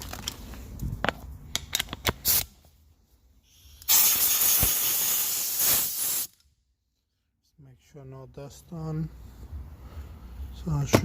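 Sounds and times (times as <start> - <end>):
tools and parts clicking and knocking: 0.1 - 2.5
compressed air blow gun hissing: 3.5 - 6.3.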